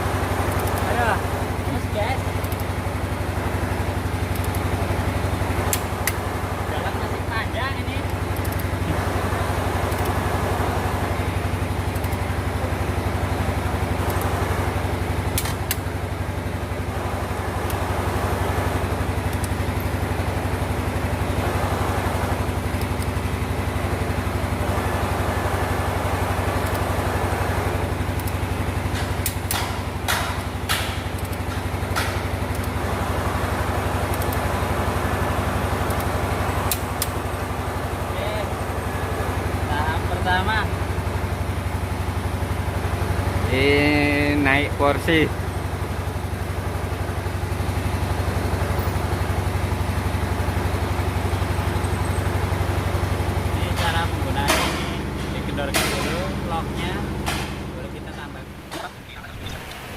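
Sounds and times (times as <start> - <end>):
engine running: 0.0 - 59.9
sharp metallic clicks: 2.2 - 2.9, 4.2 - 6.3, 8.0 - 9.1, 9.8 - 10.2, 11.7 - 12.4, 15.3 - 16.0, 18.8 - 20.0, 22.5 - 23.3, 27.8 - 33.0, 34.0 - 34.7, 35.7 - 37.3, 53.6 - 57.7.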